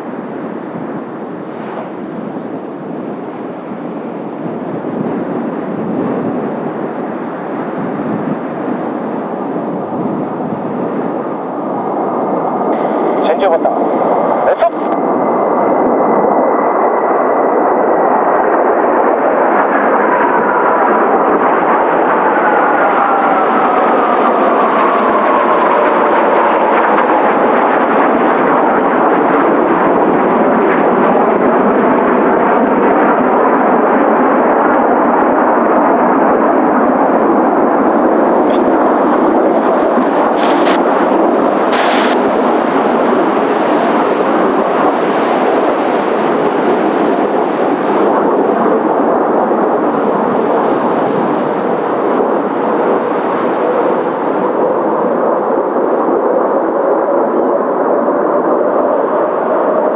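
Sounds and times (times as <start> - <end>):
falling jet whine: 0.0 - 28.5, 36.3 - 55.3
jet roar: 0.0 - 59.9.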